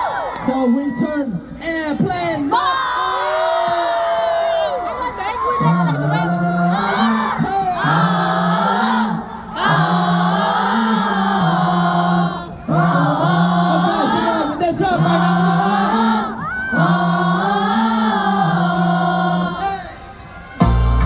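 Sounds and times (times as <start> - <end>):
choir-like singing: 5.6 - 20.8.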